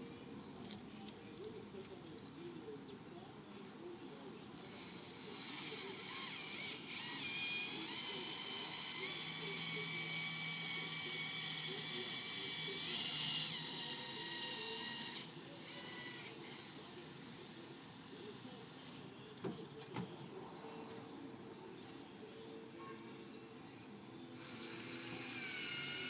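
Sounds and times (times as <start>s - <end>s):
small electric motor whirring: 4.6s - 18.8s, 24.4s - 26.0s.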